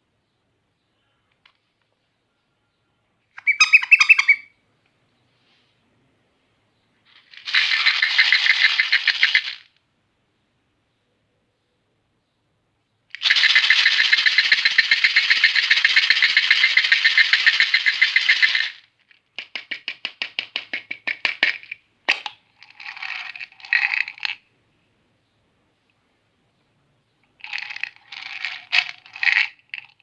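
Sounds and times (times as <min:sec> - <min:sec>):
candies rattling: 0:07.1 - 0:09.7, 0:13.2 - 0:19.3, 0:21.6 - 0:24.4, 0:27.4 - 0:30.0.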